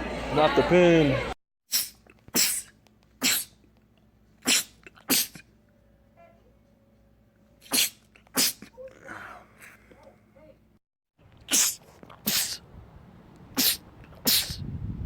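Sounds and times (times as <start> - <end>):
man sneezing: 1.7 - 3.6, 4.4 - 5.4, 7.6 - 8.8, 11.5 - 12.6, 13.6 - 14.6.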